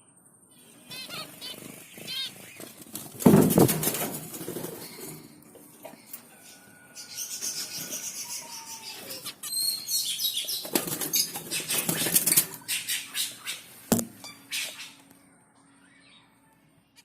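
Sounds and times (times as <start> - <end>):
baby finches chirping: 0.5 - 3.3, 6.4 - 15.0.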